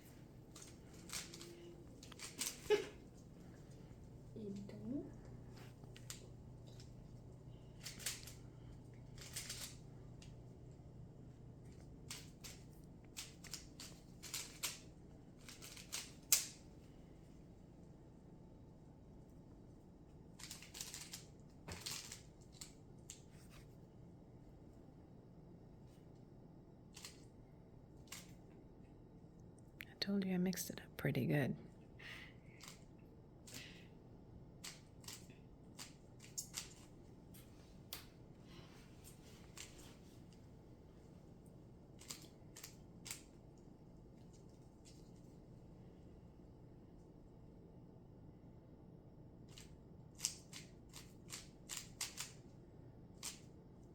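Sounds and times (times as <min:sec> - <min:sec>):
puzzle cube clicking and rattling: 0:00.5 - 0:02.8, 0:07.8 - 0:08.4, 0:09.1 - 0:09.8, 0:11.7 - 0:16.6, 0:20.4 - 0:23.3, 0:34.6 - 0:37.0, 0:42.0 - 0:43.4, 0:49.5 - 0:52.4.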